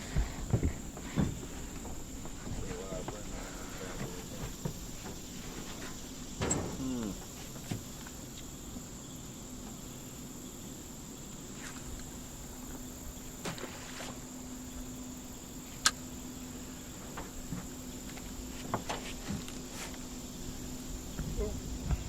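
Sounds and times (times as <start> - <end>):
crickets droning: 0.0 - 22.0.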